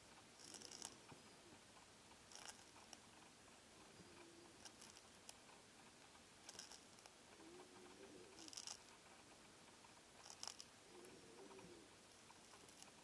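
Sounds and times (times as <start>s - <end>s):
snail rasping a leaf: 7.8s - 9.3s, 10.1s - 11.1s.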